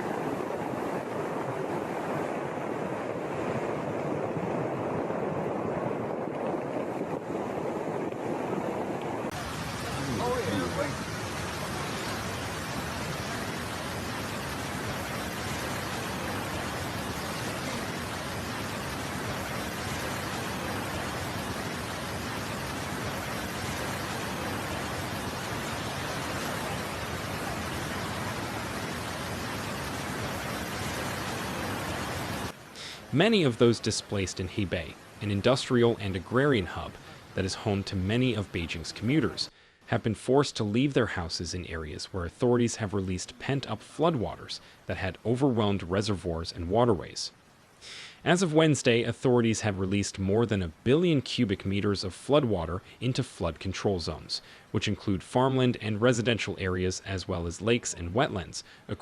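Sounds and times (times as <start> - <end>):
water rushing: 0.0 - 59.0
fast-flowing floodwater roar: 9.2 - 40.1.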